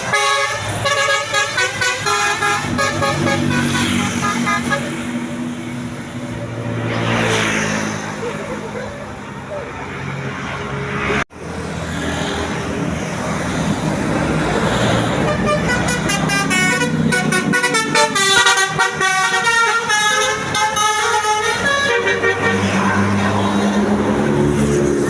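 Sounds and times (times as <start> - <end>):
multi-tone air horn tune: 0.0 - 5.2, 15.2 - 22.8.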